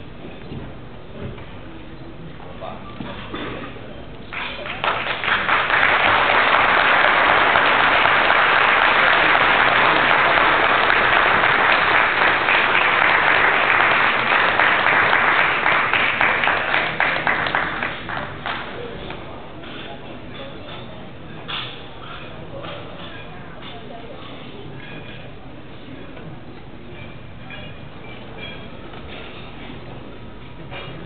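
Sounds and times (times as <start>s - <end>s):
audience applauding: 4.3s - 18.8s.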